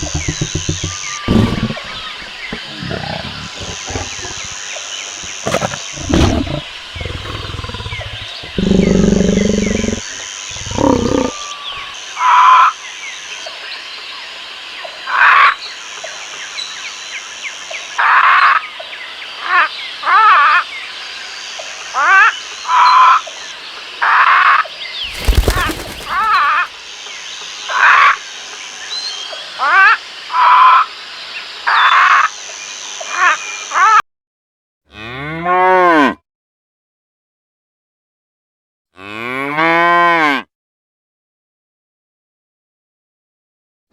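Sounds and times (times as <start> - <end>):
big cat roaring: 0.0 - 4.6, 5.2 - 11.9, 25.1 - 26.6
short loud animal calls: 0.0 - 4.6, 5.2 - 11.9, 25.0 - 26.6.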